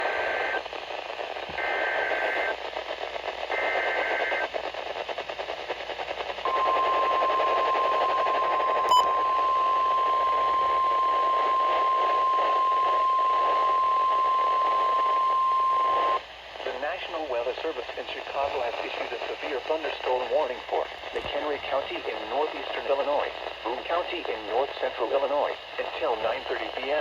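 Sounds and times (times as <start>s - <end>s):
radio hiss: 0.0s - 27.0s
steady warning alarm tone: 6.5s - 16.2s.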